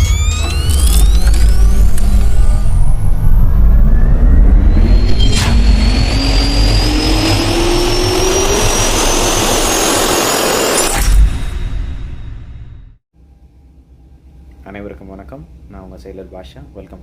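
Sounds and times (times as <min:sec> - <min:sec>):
engine with rising whine: 0:00.0 - 0:13.0.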